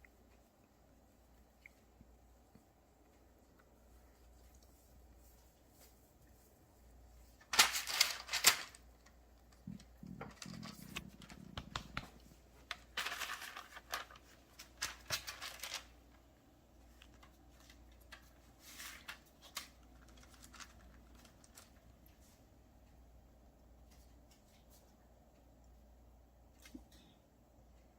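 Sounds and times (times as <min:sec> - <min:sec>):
low room hum: 0:00.0 - 0:27.9
packaging rustling and tearing: 0:07.4 - 0:08.9, 0:10.1 - 0:16.0, 0:17.0 - 0:21.9.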